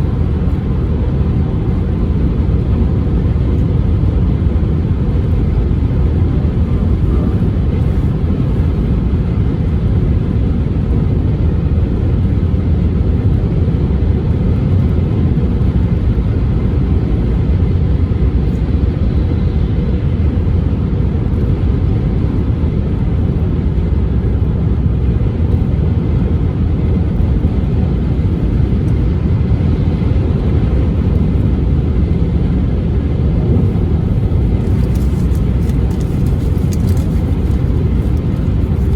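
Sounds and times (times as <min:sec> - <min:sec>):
car engine and tyre rumble: 0:00.0 - 0:38.9.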